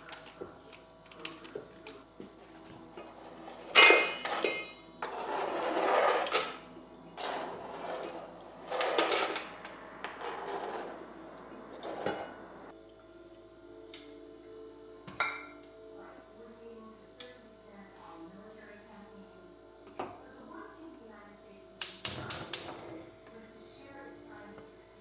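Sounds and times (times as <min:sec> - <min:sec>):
utensils scraping mixing bowl: 0:03.0 - 0:12.4.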